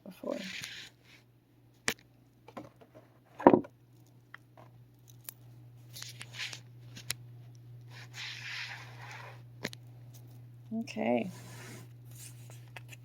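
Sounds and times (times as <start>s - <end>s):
steady low hum: 0.0s - 13.0s
cards sliding and rubbing: 0.2s - 1.2s, 6.0s - 7.0s, 7.9s - 9.5s, 11.2s - 13.0s.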